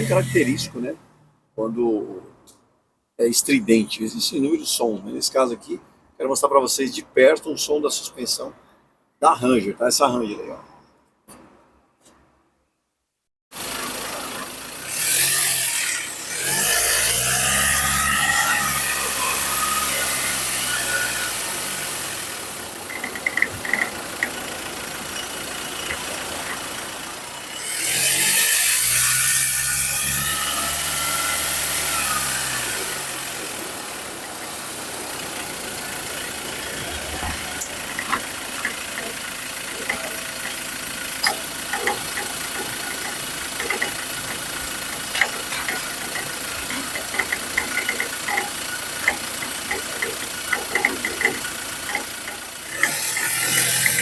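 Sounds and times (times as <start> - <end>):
engine and road noise: 0.0 - 2.6, 13.5 - 54.0
suspension knocks and rattles: 16.4 - 28.2, 32.2 - 54.0.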